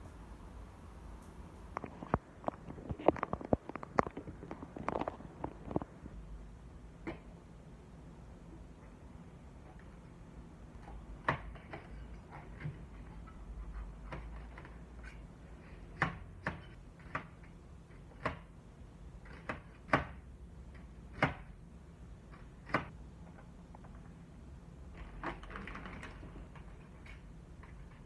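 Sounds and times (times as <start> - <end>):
faint low hum: 0.0 - 2.6.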